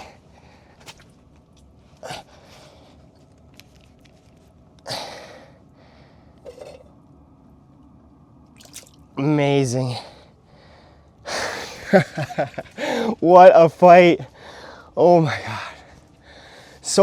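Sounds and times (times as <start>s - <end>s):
man breathing heavily: 0.0s - 0.8s, 1.9s - 3.2s, 4.8s - 6.6s, 9.8s - 11.9s, 12.7s - 13.2s, 14.2s - 16.9s.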